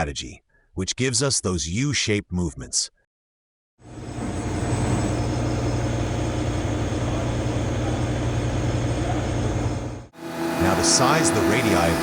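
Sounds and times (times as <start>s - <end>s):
milling machine droning: 3.9s - 12.0s.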